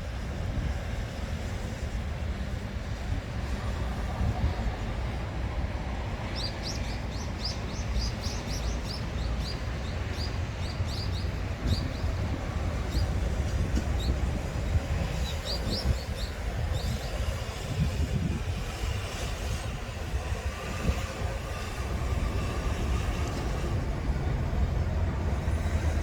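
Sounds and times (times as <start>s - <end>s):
low outdoor rumble: 0.0s - 26.0s.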